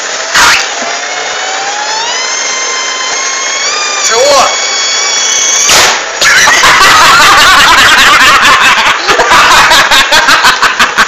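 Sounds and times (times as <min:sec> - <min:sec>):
loud distorted laughter: 0:06.2 - 0:11.0.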